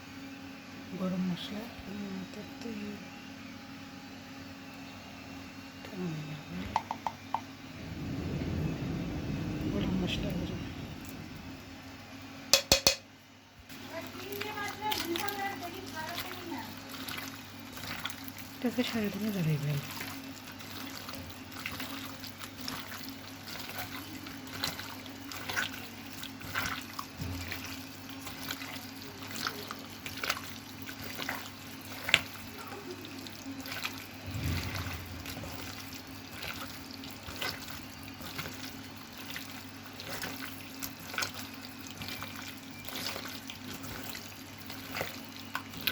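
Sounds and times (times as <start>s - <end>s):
faint low hum: 5.8s - 12.5s, 32.5s - 38.6s
hands squelching raw meat: 33.1s - 45.9s.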